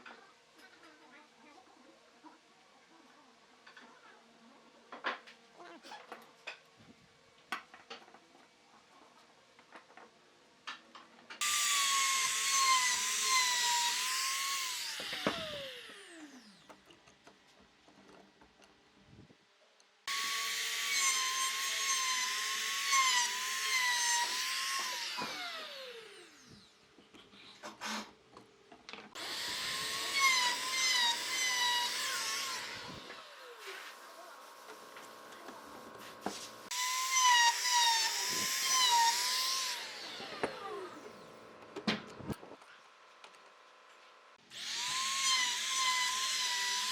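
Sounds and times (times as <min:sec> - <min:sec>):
electric power tool cutting wood: 0:11.4 - 0:16.7, 0:20.1 - 0:26.7, 0:29.2 - 0:42.1, 0:44.4 - 0:46.9.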